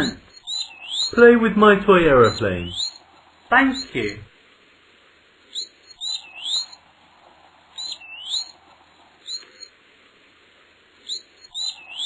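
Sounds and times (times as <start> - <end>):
birds chirping: 0.0 - 4.3, 5.6 - 6.8, 7.8 - 8.6, 11.1 - 12.0.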